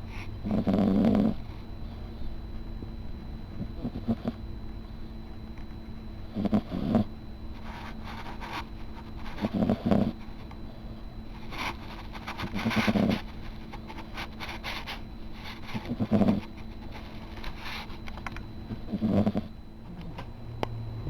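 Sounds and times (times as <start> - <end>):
kitten snoring: 0.1 - 2.3, 3.6 - 4.5, 6.3 - 10.4, 11.4 - 16.7, 18.7 - 20.2.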